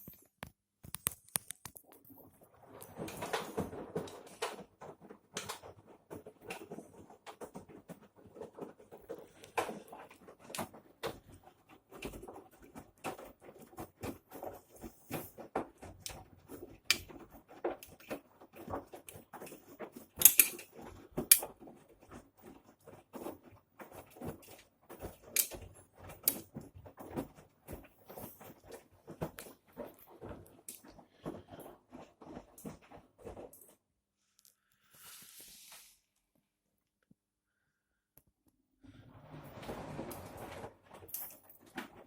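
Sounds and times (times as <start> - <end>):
washing machine clicking and tapping: 2.4 - 33.4.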